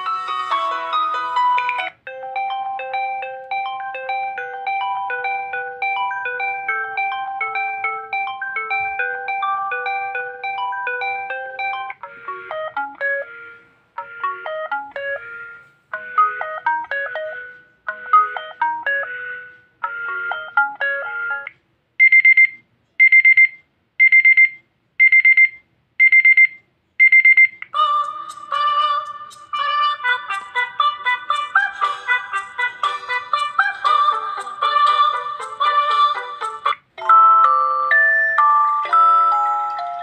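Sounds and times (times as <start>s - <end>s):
melodic phone alarm tone: 0.0s - 21.5s, 37.0s - 40.0s.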